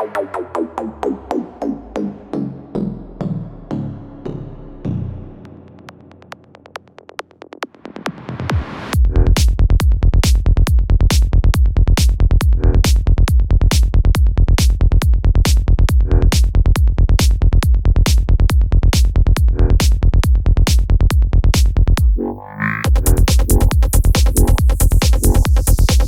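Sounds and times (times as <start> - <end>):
rolling bassline: 0.0 - 7.9, 8.5 - 26.0
kick drum: 7.6 - 22.2, 22.9 - 26.0.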